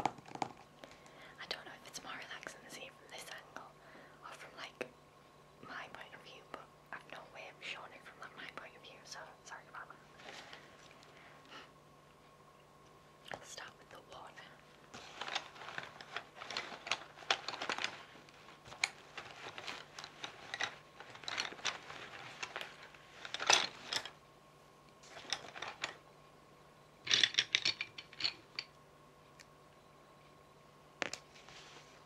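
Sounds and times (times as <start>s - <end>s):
pencils rattling in a pencil case: 14.9s - 24.2s, 25.1s - 26.0s, 27.1s - 28.7s.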